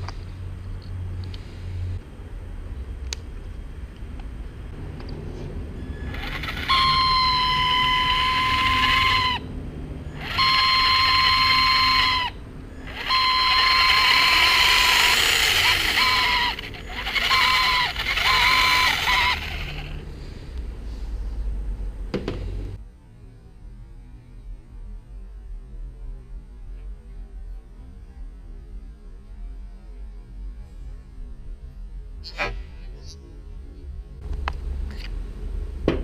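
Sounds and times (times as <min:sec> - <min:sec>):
low motor hum: 0:00.0 - 0:36.0
electric motor squealing: 0:05.8 - 0:09.5, 0:10.1 - 0:20.0.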